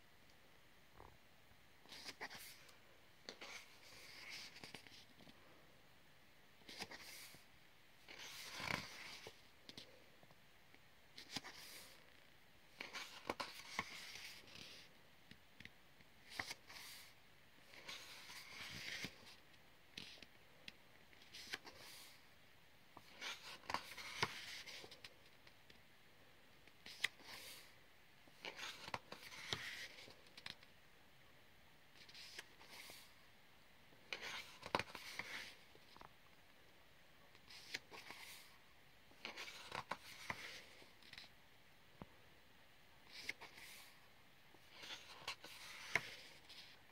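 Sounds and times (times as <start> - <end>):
paper pages rustling: 1.8 - 2.6, 3.3 - 5.4, 6.6 - 7.4, 8.1 - 9.9, 12.8 - 14.9, 16.2 - 19.4, 23.0 - 25.2, 28.4 - 30.6, 32.0 - 33.1, 34.1 - 36.1, 37.4 - 38.6, 39.2 - 41.3, 43.1 - 44.0, 44.7 - 46.8.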